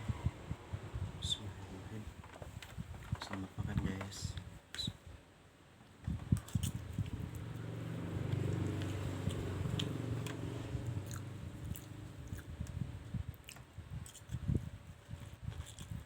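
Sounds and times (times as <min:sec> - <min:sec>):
low steady hum: 0:00.0 - 0:16.0
chewing fried noodles: 0:06.4 - 0:16.0.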